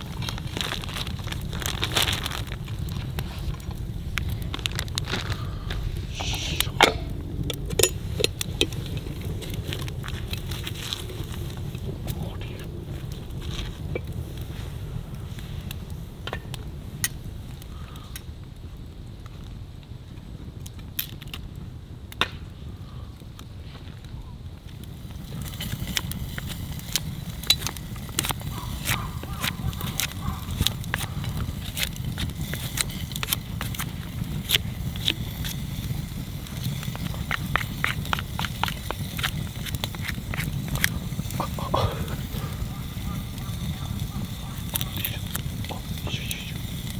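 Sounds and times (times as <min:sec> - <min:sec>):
low rumble: 0:00.0 - 0:15.3
campfire crackling and popping: 0:00.0 - 0:46.9.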